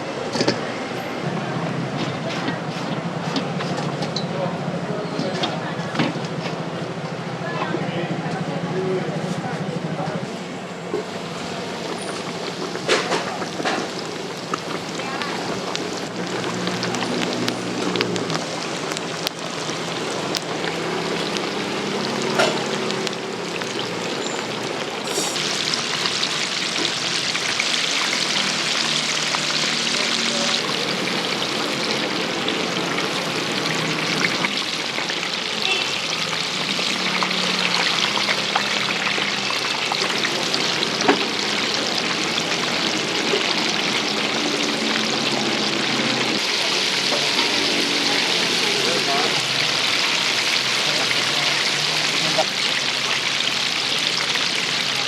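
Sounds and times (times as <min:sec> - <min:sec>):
hot oil sizzling in a fryer: 0:10.2 - 0:55.0.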